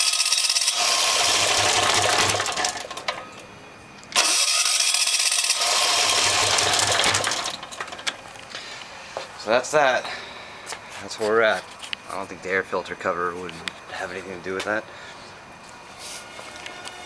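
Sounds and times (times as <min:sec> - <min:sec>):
diesel engine cranking: 0:00.0 - 0:08.6.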